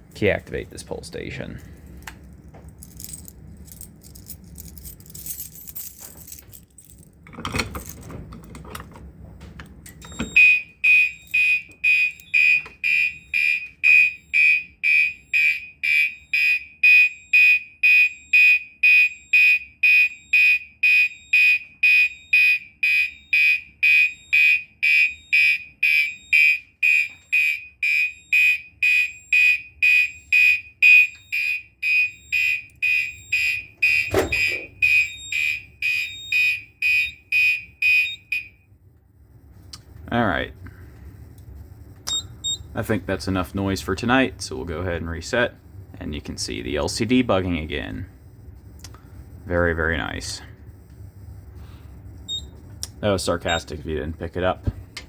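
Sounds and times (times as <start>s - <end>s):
fire alarm horn pulsing: 10.0s - 39.5s, 40.1s - 54.6s.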